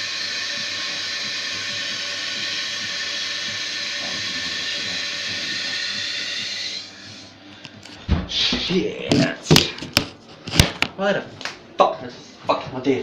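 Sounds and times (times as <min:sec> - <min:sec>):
water hissing through cistern valve: 0:00.0 - 0:07.4.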